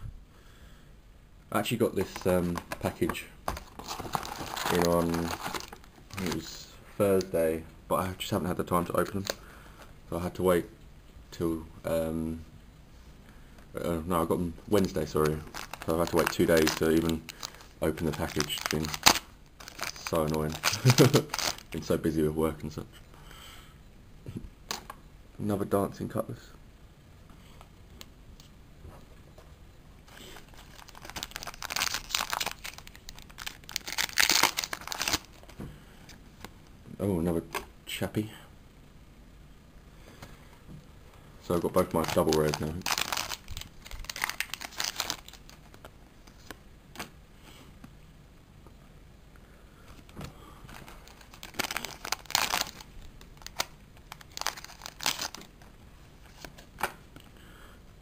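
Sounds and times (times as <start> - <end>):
wrapper crinkling and tearing: 2.0 - 6.6, 14.7 - 21.9, 30.1 - 35.6, 41.6 - 47.1, 50.7 - 56.9.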